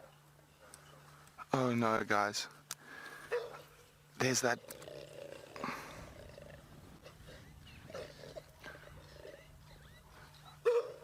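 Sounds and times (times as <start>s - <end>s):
lioness growling: 4.6s - 10.4s.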